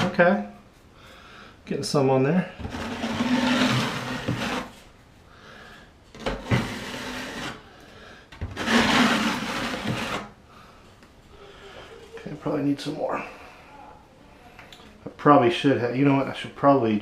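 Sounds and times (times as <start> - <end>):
drywall knife scraping: 2.6 - 4.8, 6.2 - 7.7, 8.4 - 10.4.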